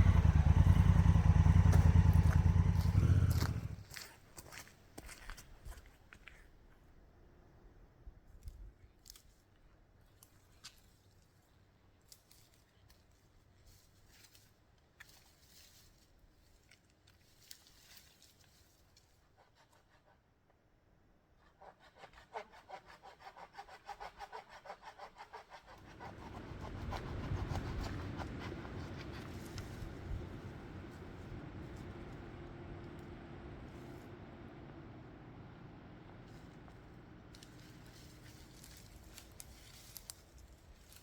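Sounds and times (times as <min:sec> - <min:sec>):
motorcycle engine cranking: 0:00.0 - 0:03.8
motorcycle engine running: 0:00.0 - 0:04.0, 0:25.8 - 0:39.5.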